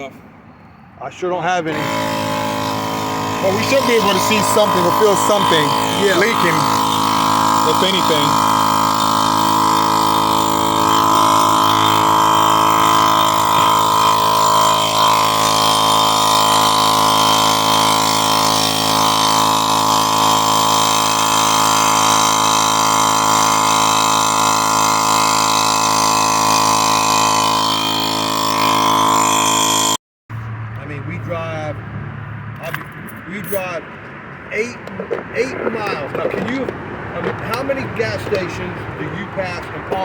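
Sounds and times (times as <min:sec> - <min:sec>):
motor humming steadily: 0:01.7 - 0:30.0.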